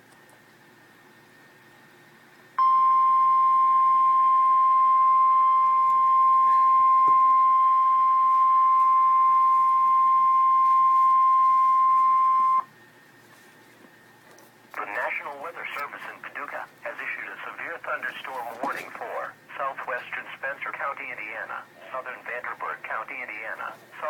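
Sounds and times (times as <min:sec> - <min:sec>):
steady high alert beep: 0:02.6 - 0:12.6.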